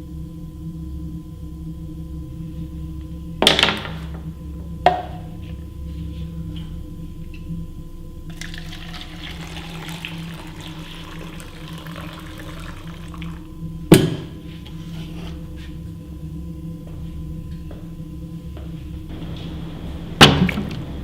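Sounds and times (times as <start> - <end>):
steady low hum: 0.0 - 21.0
sharp knock: 13.9 - 14.4.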